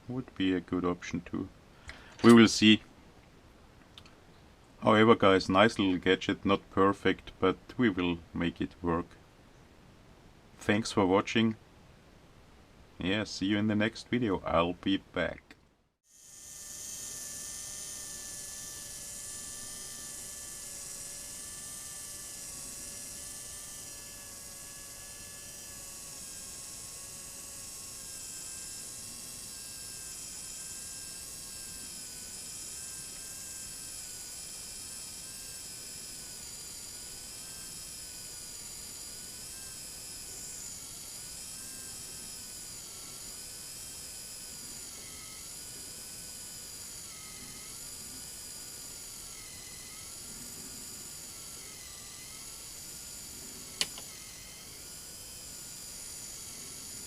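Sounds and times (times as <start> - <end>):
wavering high-pitched whine: 16.1 - 57.0
sharp click: 53.8 - 54.1.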